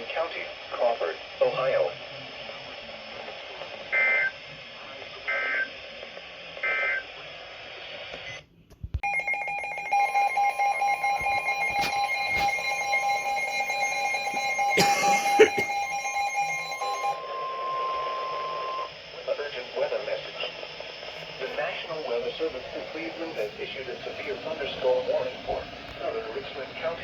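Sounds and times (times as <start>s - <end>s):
digital data tone bursts: 9.0s - 18.9s
electronic alert tone: 9.0s - 18.9s.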